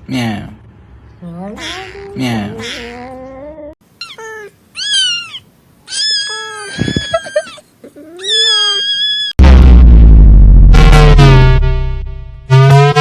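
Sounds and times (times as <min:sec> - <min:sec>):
cat meowing: 0:04.0 - 0:09.3.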